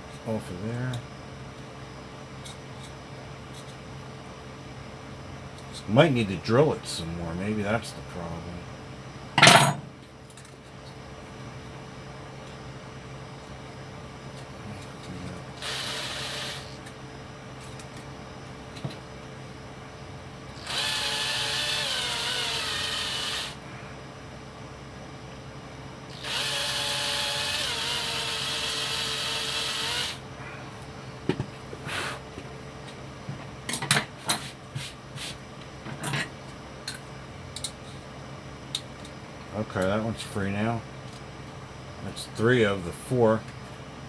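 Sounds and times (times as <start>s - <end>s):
small power drill whining: 15.6s - 16.9s, 20.6s - 23.6s, 26.1s - 30.2s.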